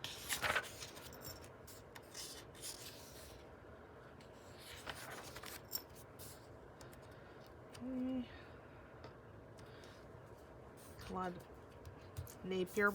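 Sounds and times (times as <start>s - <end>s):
book pages rustling: 0.0s - 1.2s, 4.3s - 6.0s.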